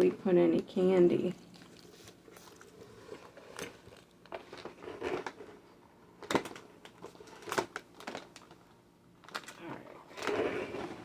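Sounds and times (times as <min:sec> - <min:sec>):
packaging rustling and crinkling: 0:01.6 - 0:05.6, 0:06.2 - 0:11.0.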